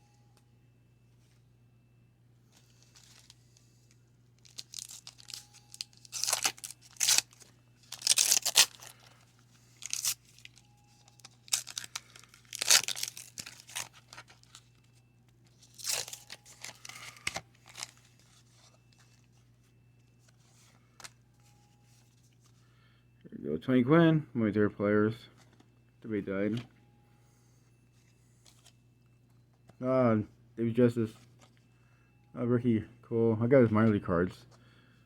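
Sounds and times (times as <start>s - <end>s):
wax paper wrapper tearing: 4.4s - 9.2s, 9.8s - 14.6s, 15.6s - 18.3s.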